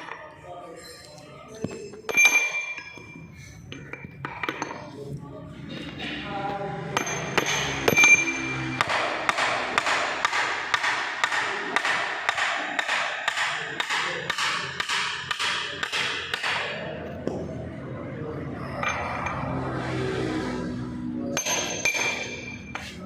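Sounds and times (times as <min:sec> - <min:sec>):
hammer strikes: 0:01.6 - 0:04.9, 0:05.8 - 0:17.7, 0:21.2 - 0:23.0.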